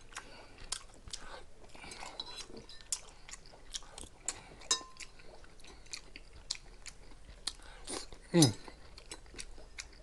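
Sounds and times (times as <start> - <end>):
chewing and mouth clicks: 0.0 - 10.0
utensil clinking against dish: 4.7 - 5.0.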